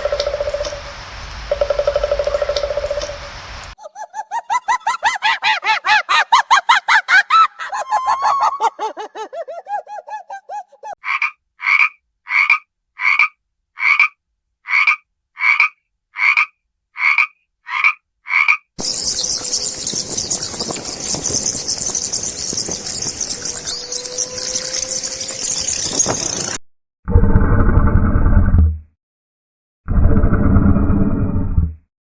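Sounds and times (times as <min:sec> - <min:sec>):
frogs croaking: 0:00.0 - 0:03.7, 0:11.0 - 0:25.4.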